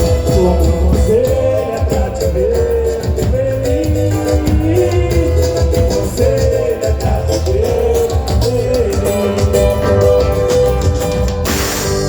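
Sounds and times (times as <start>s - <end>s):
samba music with heavy bass: 0.0s - 12.0s.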